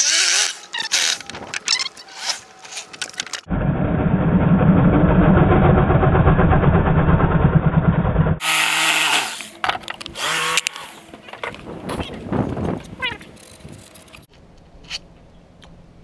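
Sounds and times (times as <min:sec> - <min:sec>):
power tool cutting wood: 0:00.0 - 0:03.4, 0:08.4 - 0:11.3
knocks and handling noise: 0:09.6 - 0:14.2.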